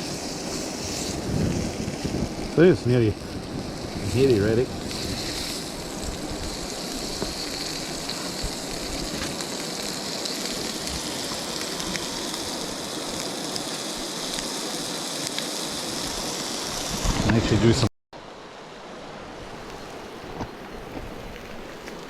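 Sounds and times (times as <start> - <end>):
fish sizzling in a frying pan: 0.0 - 17.1.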